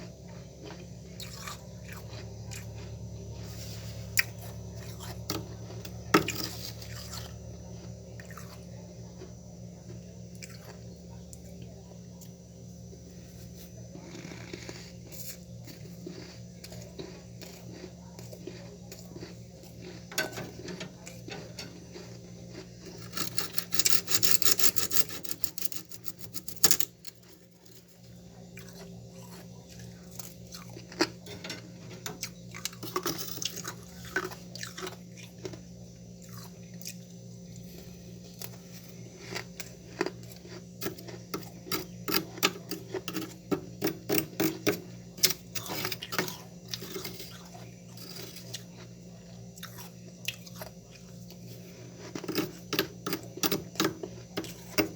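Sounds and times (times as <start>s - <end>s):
crunchy chewing of frost: 0.0s - 54.8s
steady low hum: 0.0s - 54.9s
frost being scraped: 19.9s - 26.9s.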